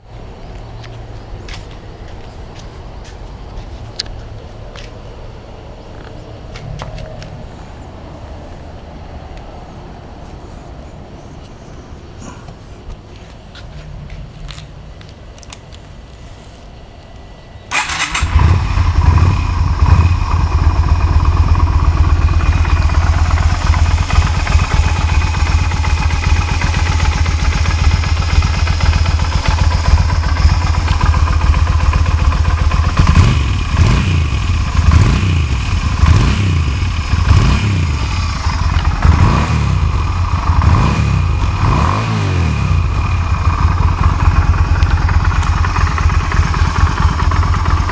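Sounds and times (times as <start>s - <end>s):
motorcycle engine revving: 17.7s - 47.9s
motorcycle engine starting and idling: 17.7s - 47.9s.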